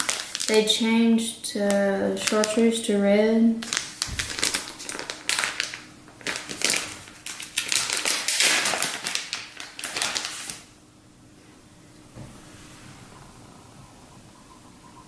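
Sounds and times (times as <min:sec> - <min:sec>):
plastic packaging crinkling: 0:00.0 - 0:00.7, 0:02.2 - 0:02.6, 0:03.6 - 0:10.7.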